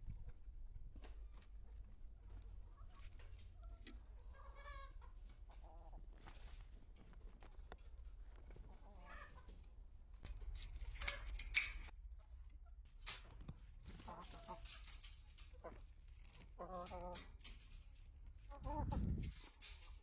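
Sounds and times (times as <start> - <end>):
rustling and scraping: 0.1 - 20.0
chickens clucking: 2.2 - 6.6, 7.6 - 9.7, 13.8 - 17.8, 18.4 - 20.0.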